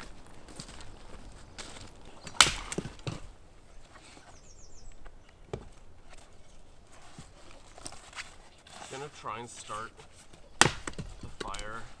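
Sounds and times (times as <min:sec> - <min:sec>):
firewood cracking: 0:00.0 - 0:12.0.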